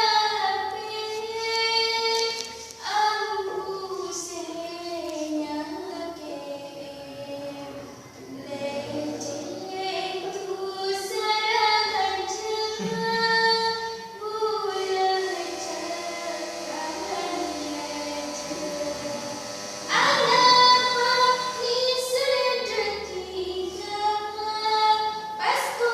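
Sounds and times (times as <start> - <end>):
woman singing unamplified: 0.0 - 25.9
second lower voice: 19.9 - 20.9.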